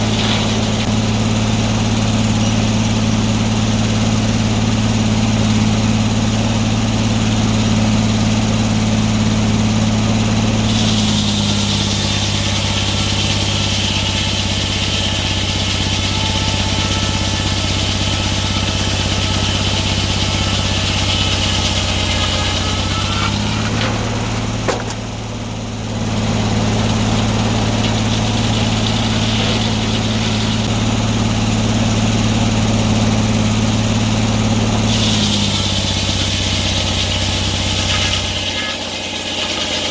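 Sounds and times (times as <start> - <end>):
sawmill engine running: 0.0 - 39.9
high whine of saw blade: 10.2 - 25.0.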